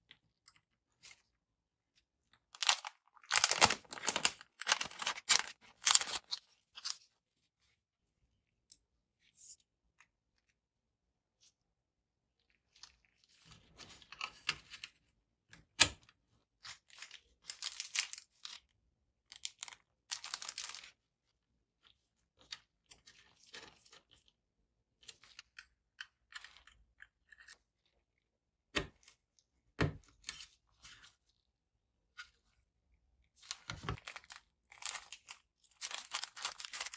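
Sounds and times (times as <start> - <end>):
plastic packaging crinkling: 2.5 - 6.4, 19.5 - 20.9, 33.6 - 36.9.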